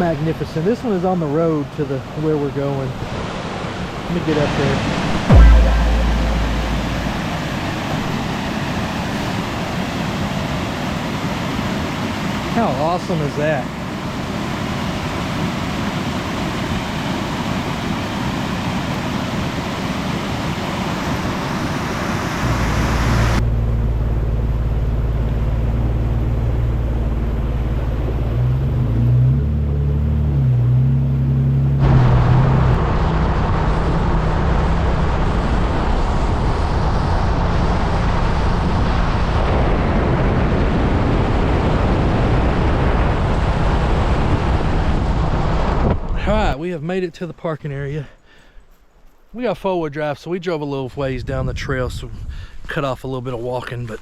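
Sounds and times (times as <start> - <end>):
vehicle engine humming: 22.4 - 32.7.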